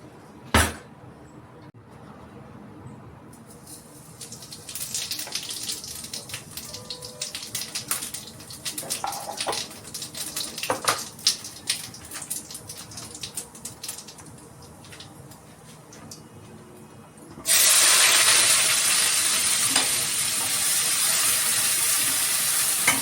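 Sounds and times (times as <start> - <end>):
food sizzling in a pan: 3.7 - 14.2, 17.5 - 23.0.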